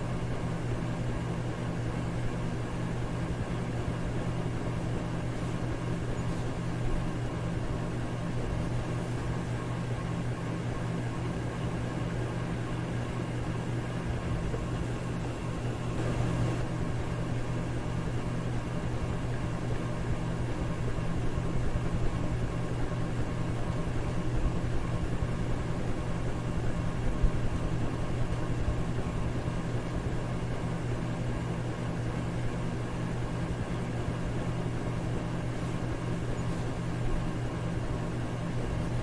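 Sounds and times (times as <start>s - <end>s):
electric fan rushing: 0.0s - 39.0s
low motor hum: 0.0s - 39.0s.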